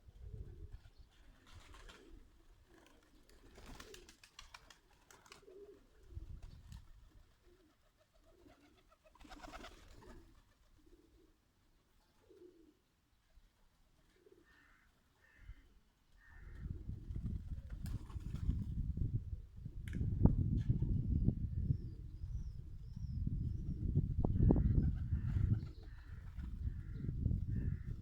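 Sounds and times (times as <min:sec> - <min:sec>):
pigeons cooing softly: 0:00.0 - 0:18.7, 0:20.8 - 0:28.0.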